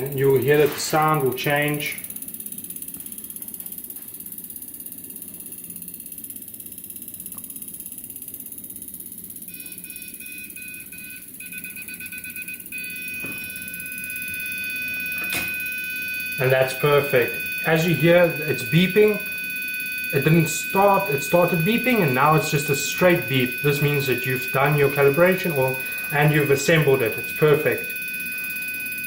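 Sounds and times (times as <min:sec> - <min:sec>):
high electronic beeps: 0:00.0 - 0:03.5, 0:09.5 - 0:29.0.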